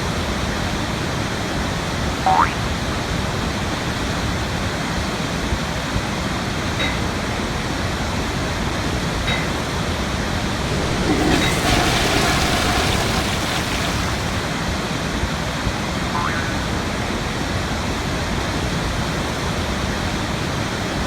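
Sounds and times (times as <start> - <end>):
waterfall rushing: 10.0 - 14.9.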